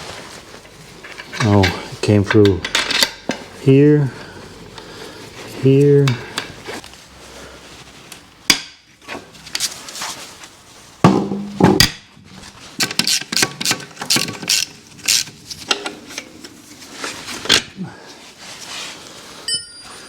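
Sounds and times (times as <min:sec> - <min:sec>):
metal parts clanking and clinking: 0:01.0 - 0:03.4.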